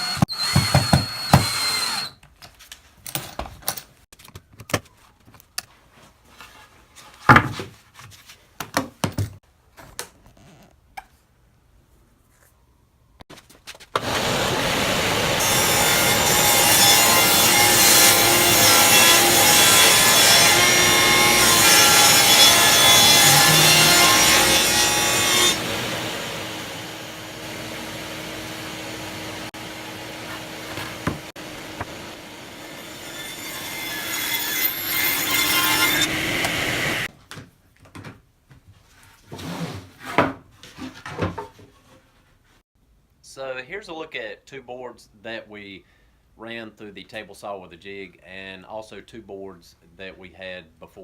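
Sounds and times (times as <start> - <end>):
table saw ripping board: 14.0 - 25.7, 29.5 - 32.1, 32.8 - 37.1.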